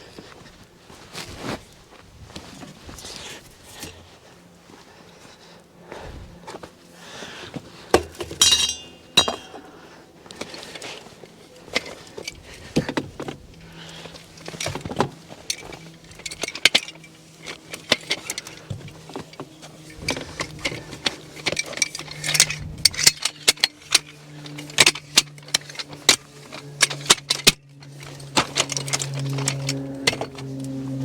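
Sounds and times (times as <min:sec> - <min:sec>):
metal pipe clinks and rattles: 0:07.9 - 0:30.8.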